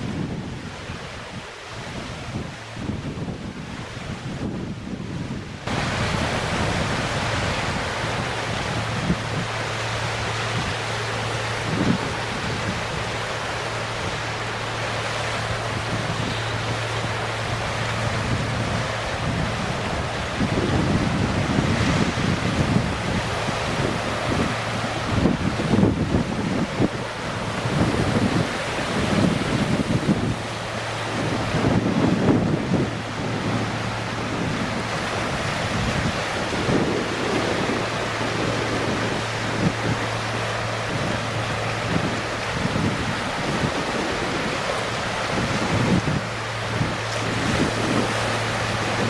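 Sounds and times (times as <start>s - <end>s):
wind buffeting microphone: 0.0s - 49.0s.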